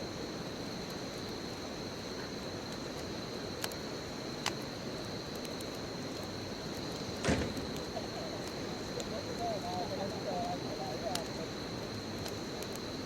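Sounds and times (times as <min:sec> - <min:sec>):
fire crackling and popping: 0:00.0 - 0:13.0
bonfire flames rushing: 0:00.4 - 0:13.0.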